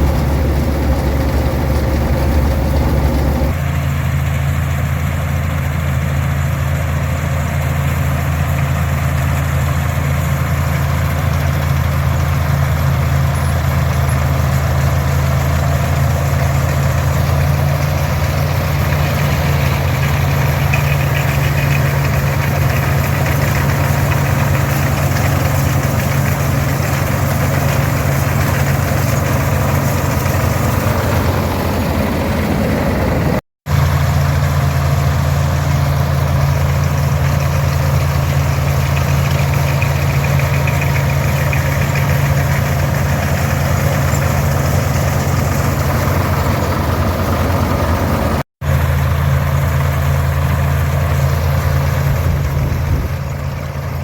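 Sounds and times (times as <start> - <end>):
tractor diesel engine droning: 0.0 - 54.0.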